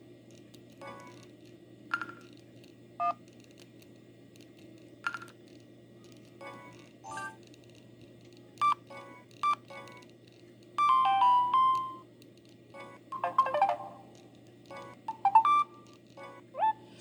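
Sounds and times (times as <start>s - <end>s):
mobile phone ringtones: 13.1s - 14.0s, 14.8s - 15.8s.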